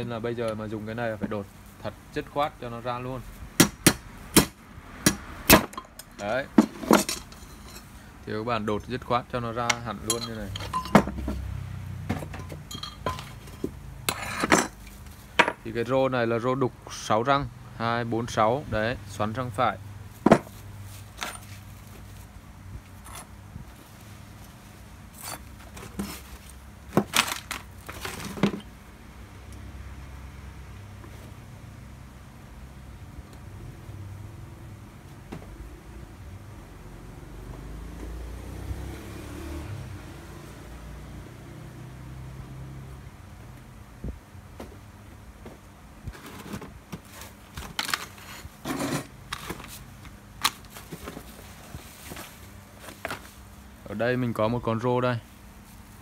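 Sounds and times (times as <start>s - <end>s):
low steady hum: 0.0s - 37.8s
metal tools clinking: 5.7s - 8.0s, 9.9s - 11.2s, 12.2s - 15.6s
scraping rustle: 6.5s - 8.0s, 20.4s - 28.7s, 45.4s - 53.5s.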